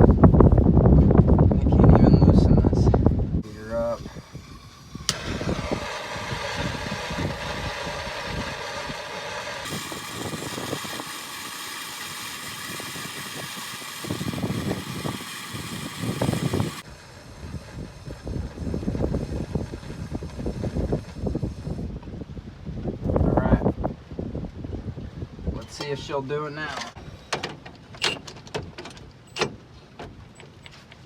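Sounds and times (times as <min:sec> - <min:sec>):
gas torch flame hissing: 0:03.4 - 0:21.9
gas torch ignition click: 0:03.5 - 0:08.9.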